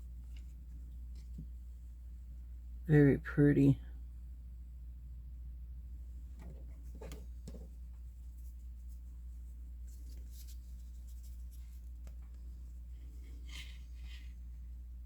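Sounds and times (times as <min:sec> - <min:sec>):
steady low hum: 0:00.0 - 0:15.0
rustling of threads and packaging: 0:06.7 - 0:14.5.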